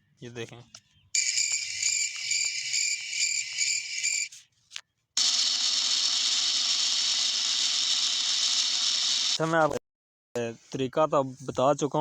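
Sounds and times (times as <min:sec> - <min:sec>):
steady noisy sound: 0:05.2 - 0:09.4.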